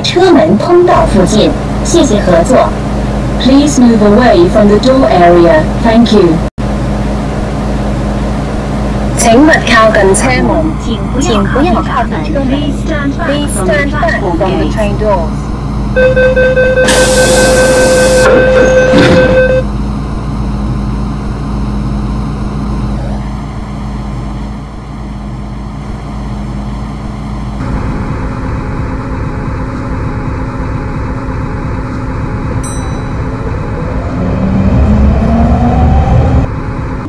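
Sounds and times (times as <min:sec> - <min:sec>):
train humming: 0:00.0 - 0:37.0
train motors whining: 0:00.0 - 0:37.0
train door warning tone: 0:09.2 - 0:22.9.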